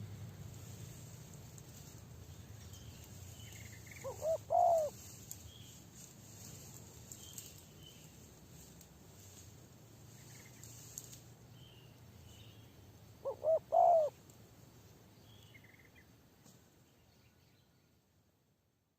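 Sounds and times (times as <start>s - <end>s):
small birds chirping: 1.1s - 14.2s, 14.8s - 16.2s
dove cooing: 3.8s - 5.0s, 13.2s - 14.2s.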